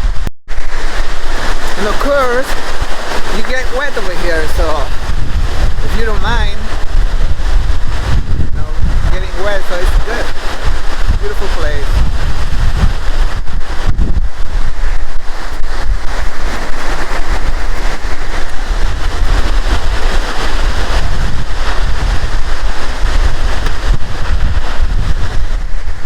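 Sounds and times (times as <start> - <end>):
waterfall roaring: 0.0 - 26.0
wind buffeting microphone: 0.0 - 26.0.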